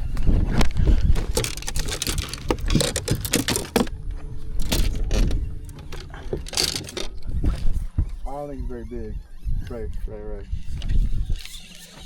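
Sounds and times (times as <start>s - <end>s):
fish knocking and rattling in boat: 0.8s - 4.0s, 4.6s - 7.7s.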